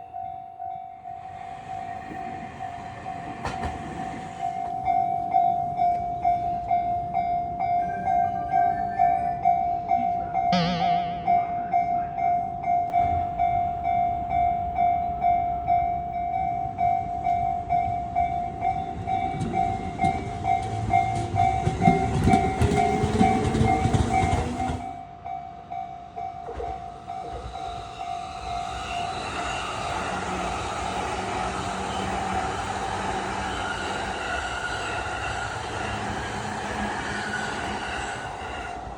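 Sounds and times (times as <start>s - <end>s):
level crossing warning bell: 0.0s - 1.3s, 4.4s - 28.7s
electric train rumbling past: 0.0s - 38.9s
train rumble: 1.0s - 7.2s, 12.9s - 25.2s.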